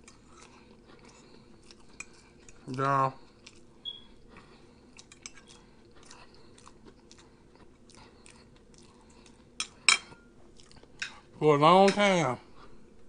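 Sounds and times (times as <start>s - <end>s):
wet chewing clicks and smacks: 0.0s - 9.5s, 10.6s - 11.0s.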